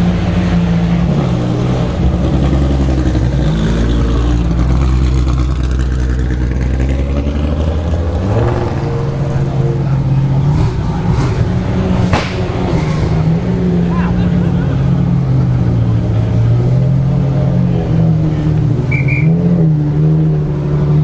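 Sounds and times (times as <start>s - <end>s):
sports car engine running: 0.0s - 21.0s.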